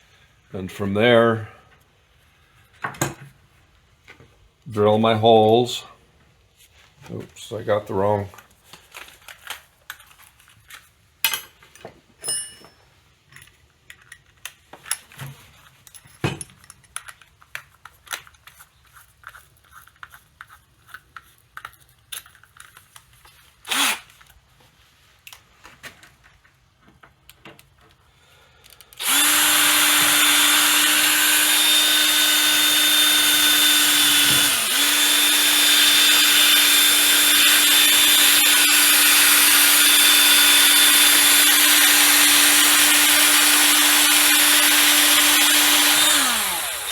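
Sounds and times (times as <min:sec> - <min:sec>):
tools clicking and knocking: 0:11.2 - 0:23.4, 0:28.8 - 0:46.9
electric drill drilling: 0:23.7 - 0:24.1, 0:29.0 - 0:46.9.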